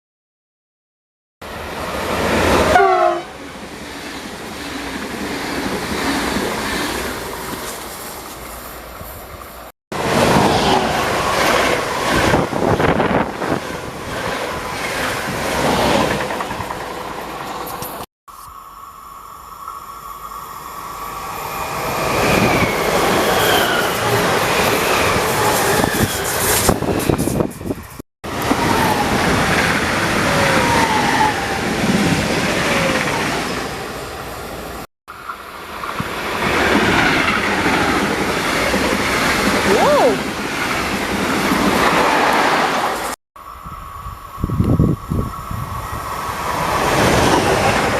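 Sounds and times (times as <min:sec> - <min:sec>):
train hum: 0:01.4 - 0:47.9
train wheels clattering on rails: 0:10.1 - 0:18.0.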